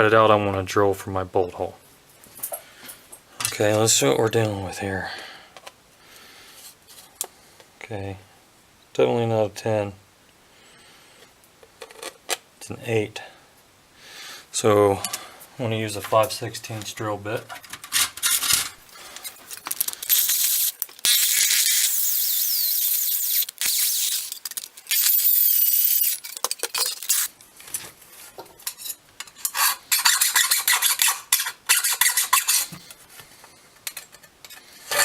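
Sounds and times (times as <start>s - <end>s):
drill bit squealing through metal: 19.1s - 26.2s.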